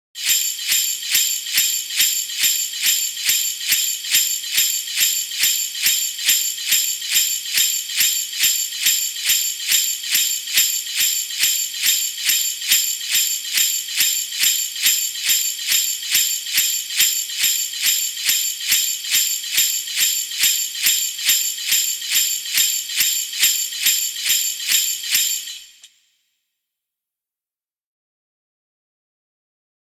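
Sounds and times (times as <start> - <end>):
sleigh bells jingling: 0.2 - 26.0.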